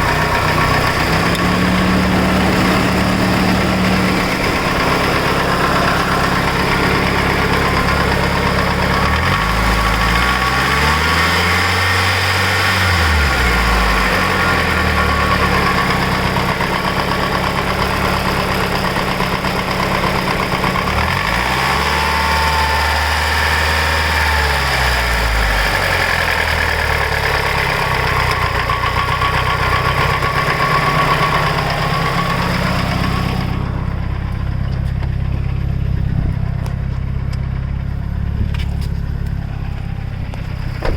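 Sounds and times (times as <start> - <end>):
engine lifter ticking: 0.0 - 11.4, 24.6 - 40.9
car engine revving: 0.0 - 40.9.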